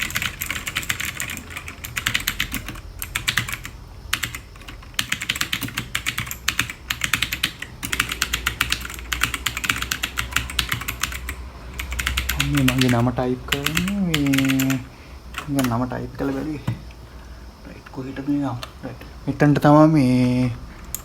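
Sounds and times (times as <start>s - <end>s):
mechanical keyboard typing: 0.0s - 16.5s.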